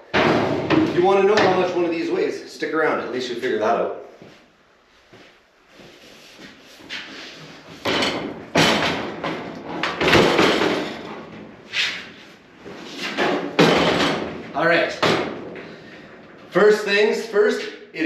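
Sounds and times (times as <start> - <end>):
knocks and thumps of wood and metal: 0.0 - 1.9, 7.7 - 11.6, 13.0 - 16.4.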